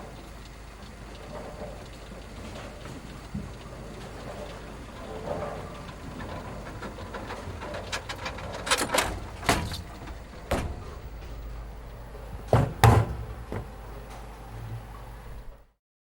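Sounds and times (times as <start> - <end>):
steady low hum: 0.0 - 15.8
knocks and clatters: 3.3 - 11.5, 12.4 - 14.3
loud thumps: 9.5 - 11.5, 12.4 - 13.8.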